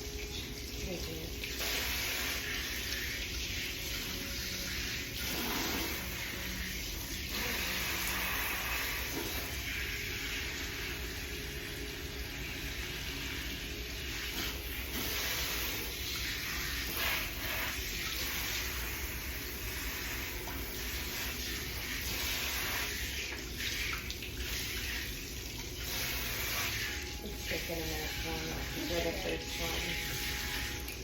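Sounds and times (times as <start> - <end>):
water running from tap: 0.0 - 31.0.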